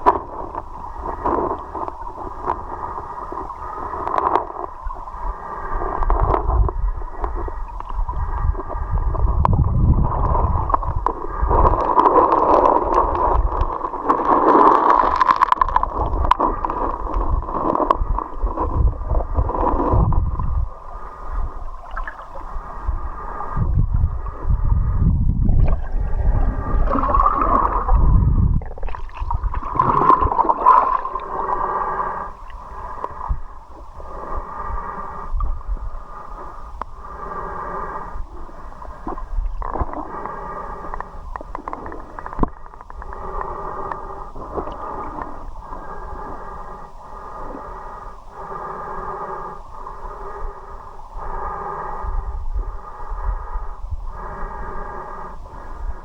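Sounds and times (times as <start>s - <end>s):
muffled underwater river gurgling: 0.0s - 56.0s
low rumbling swells: 6.1s - 14.1s, 15.7s - 37.3s.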